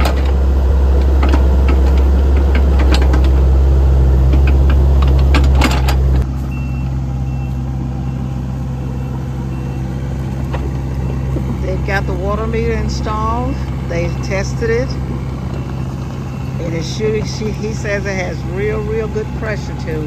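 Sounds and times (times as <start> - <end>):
metal clanks and knocks: 0.0 - 6.2
work machine engine running: 0.0 - 20.0
reversing beeper: 6.3 - 20.0.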